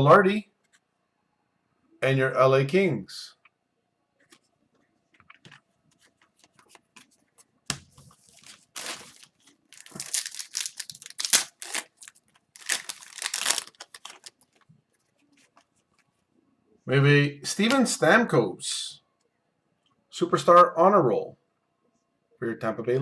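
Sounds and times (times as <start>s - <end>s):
cards being handled: 5.2s - 14.7s
wrapper tearing and crinkling: 8.4s - 14.6s.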